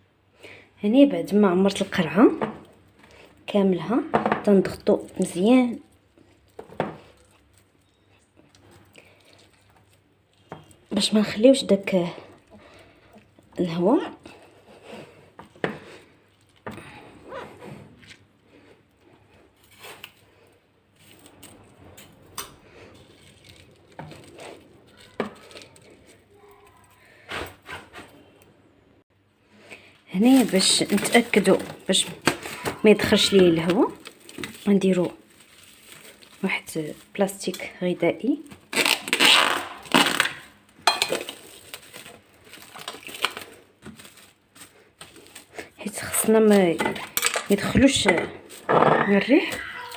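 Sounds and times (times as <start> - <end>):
cling film crinkling: 4.4 - 14.9, 19.6 - 27.2, 30.2 - 37.5, 38.3 - 48.7
glass jar clinking and knocking: 40.8 - 41.3.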